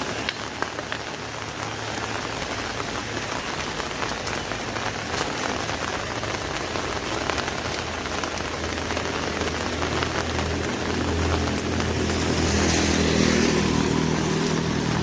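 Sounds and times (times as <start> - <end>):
rain pattering on an umbrella: 0.0 - 15.0
vehicle engine: 0.0 - 15.0.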